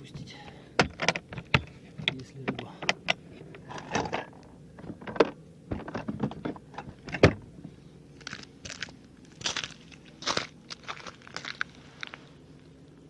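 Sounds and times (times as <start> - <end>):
gear handling clicks and knocks: 0.4 - 7.4.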